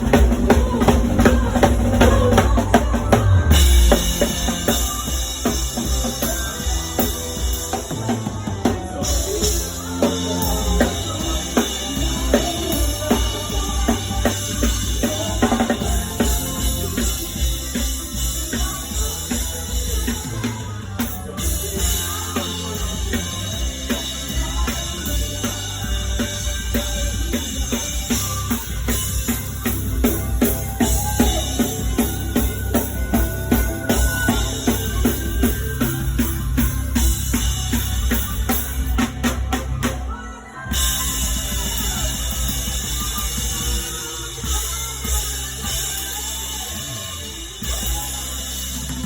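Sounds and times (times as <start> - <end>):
band playing: 0.0 - 49.0
bass drum and snare beat: 0.0 - 49.0.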